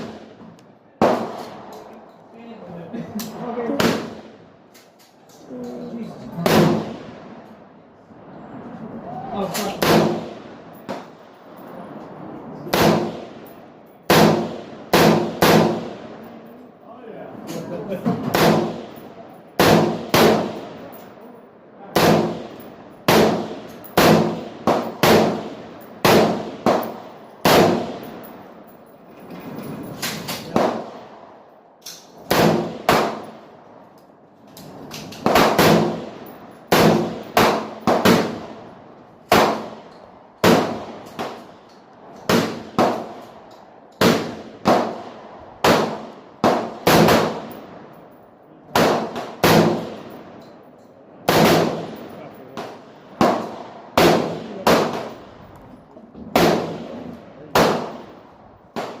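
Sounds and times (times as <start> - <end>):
rifle shots: 0.0 - 0.4, 1.0 - 1.7, 3.7 - 4.4, 6.4 - 7.4, 9.6 - 11.3, 12.7 - 16.2, 18.2 - 20.9, 21.9 - 28.4, 30.0 - 31.4, 32.0 - 33.5, 34.8 - 41.6, 42.2 - 43.4, 44.0 - 47.9, 48.7 - 50.4, 51.2 - 55.4, 56.3 - 59.0.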